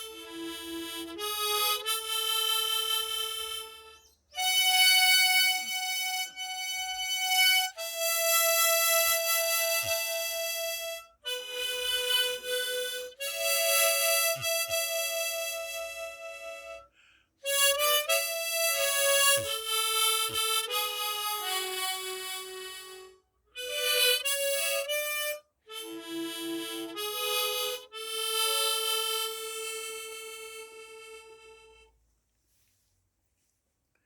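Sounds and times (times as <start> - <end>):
harmonica playing slow melody: 0.0 - 32.0.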